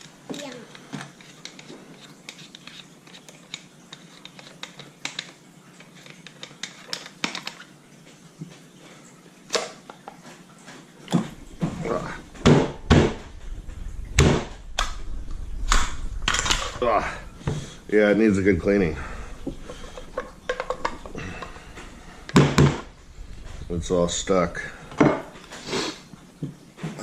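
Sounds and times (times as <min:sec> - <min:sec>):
small clicks of gun parts: 0:00.3 - 0:07.7
low handling rumble: 0:11.2 - 0:25.5
loud clunks: 0:11.5 - 0:13.4, 0:14.1 - 0:15.0.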